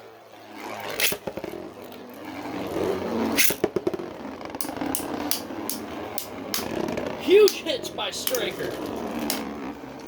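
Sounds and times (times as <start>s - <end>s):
spinning tops whirring: 0.0s - 10.0s
spinning tops clacking together: 0.9s - 1.7s, 3.3s - 9.7s.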